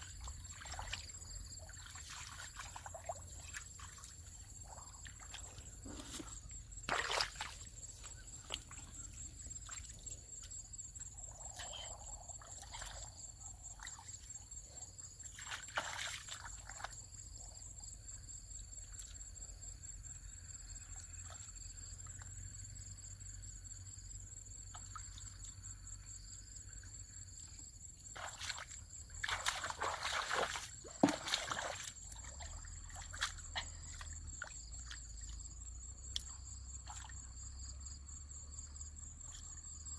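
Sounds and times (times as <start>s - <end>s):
water splashing and sloshing: 0.0s - 17.4s, 27.0s - 37.7s
high insect trill: 0.0s - 39.9s.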